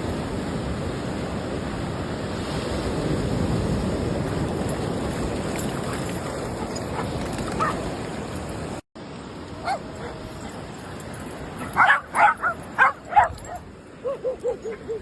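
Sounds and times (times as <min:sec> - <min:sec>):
wind: 0:00.0 - 0:15.0
dog yipping: 0:06.9 - 0:07.8, 0:09.6 - 0:10.6, 0:11.6 - 0:15.0.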